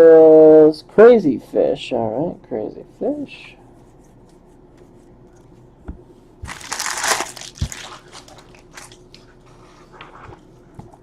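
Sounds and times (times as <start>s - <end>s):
plastic wrapping crinkling: 6.4s - 9.4s.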